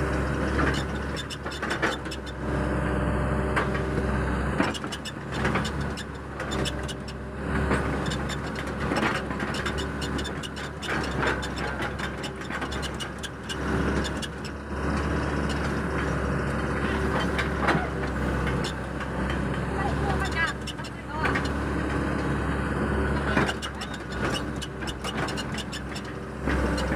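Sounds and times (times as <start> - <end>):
excavator diesel engine running: 0.0 - 26.9
knocks and clanks: 16.8 - 22.2, 23.2 - 26.9.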